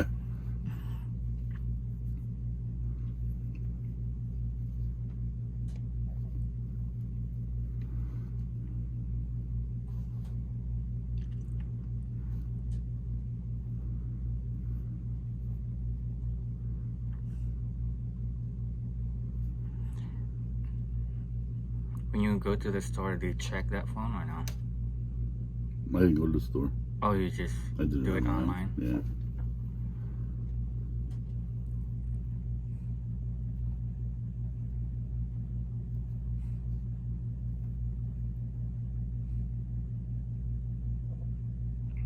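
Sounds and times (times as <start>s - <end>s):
low mechanical rumble: 0.0s - 42.0s.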